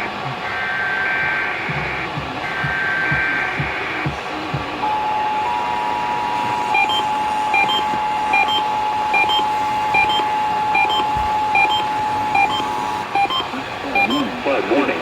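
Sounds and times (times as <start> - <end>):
higher beeps: 4.9 - 14.3.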